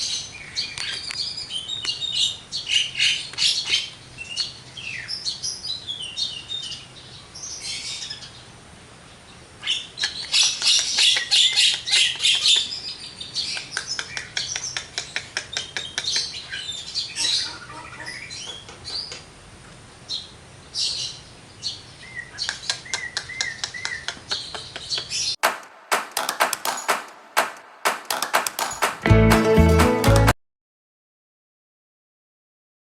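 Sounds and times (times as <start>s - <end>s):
myna singing: 29.0s - 30.3s.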